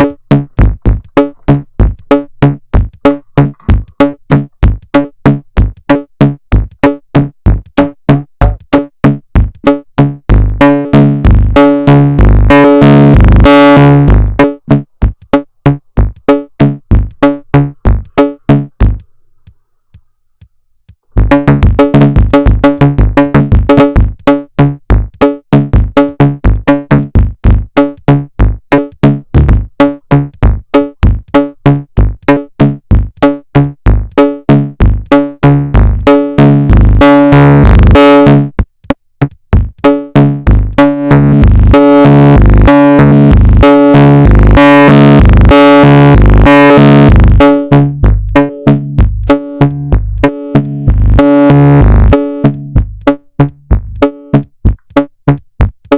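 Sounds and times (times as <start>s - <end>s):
arpeggiated synthesizer sequence: 0.0s - 5.1s, 7.8s - 19.1s, 21.1s - 24.4s, 34.0s - 38.5s, 39.8s - 54.5s.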